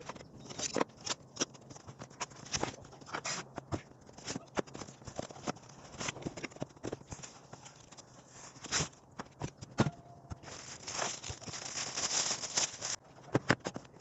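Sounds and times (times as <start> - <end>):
cardboard box being handled: 10.4 - 13.0.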